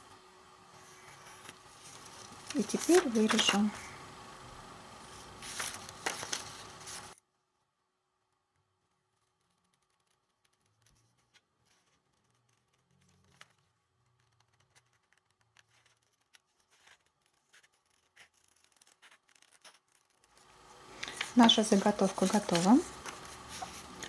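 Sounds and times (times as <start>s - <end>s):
scissors cutting paper: 14.3s - 20.4s.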